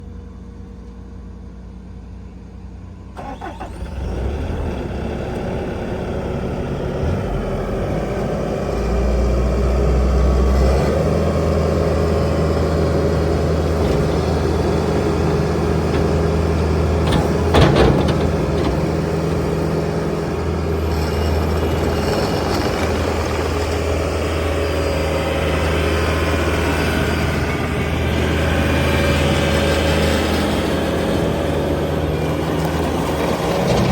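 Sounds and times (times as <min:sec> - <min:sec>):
diesel engine starting and running: 0:00.0 - 0:33.9.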